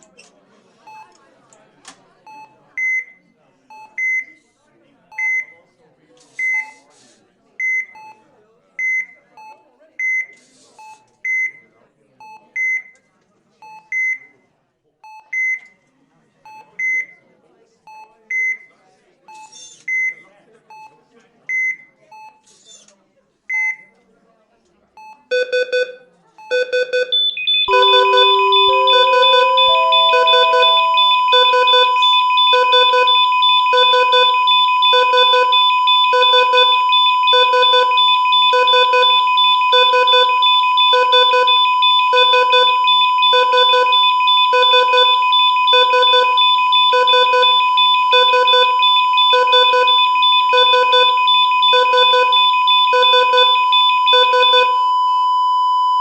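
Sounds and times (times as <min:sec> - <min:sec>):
rising three-note alarm chime: 0:27.7 - 0:32.1
continuous high-pitched alarm tone: 0:27.7 - 0:34.1
patient monitor beeping: 0:27.7 - 0:55.1.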